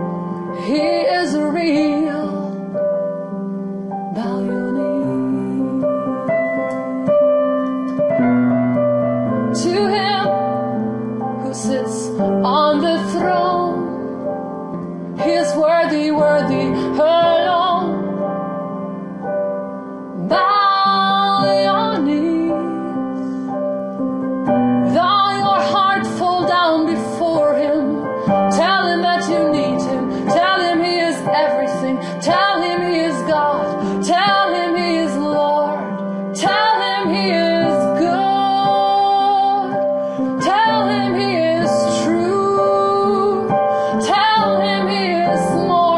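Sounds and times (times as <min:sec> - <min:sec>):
piano playing slow chords: 0:00.0 - 0:45.9
person singing melodic phrases: 0:04.1 - 0:08.1, 0:20.1 - 0:23.7, 0:24.8 - 0:45.9.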